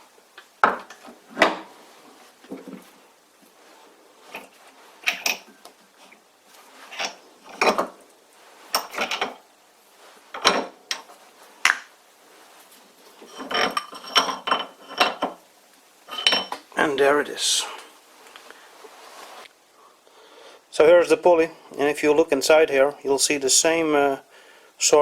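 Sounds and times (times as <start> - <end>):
metal parts knocking and clinking: 8.8 - 9.4, 13.2 - 15.4.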